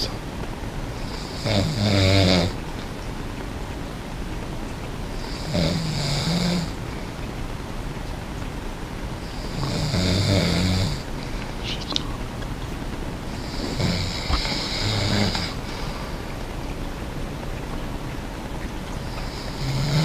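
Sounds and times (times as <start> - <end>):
person snoring: 1.1 - 2.6, 5.2 - 6.8, 9.2 - 11.1, 13.4 - 16.1, 19.3 - 20.0.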